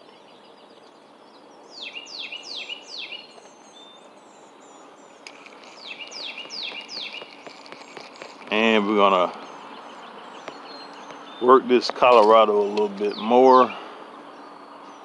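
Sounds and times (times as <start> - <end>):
songbird whistling: 0.0 - 8.1, 9.4 - 11.6
outdoor background noise: 0.0 - 15.0
high bird chirps: 1.2 - 15.0.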